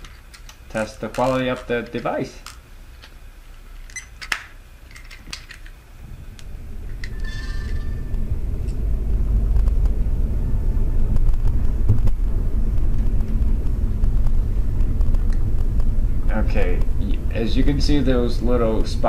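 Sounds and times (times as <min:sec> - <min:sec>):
car road and wind rumble: 0:05.8 - 0:19.0.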